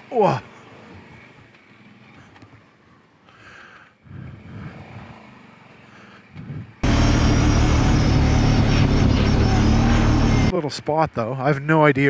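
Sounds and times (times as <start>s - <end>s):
atv engine running loud: 4.2s - 10.5s
faint low rumbling: 6.8s - 10.5s.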